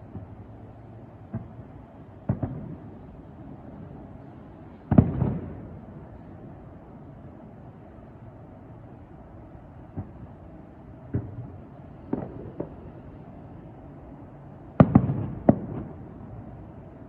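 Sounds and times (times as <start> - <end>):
fireworks bursting: 14.8 - 16.0.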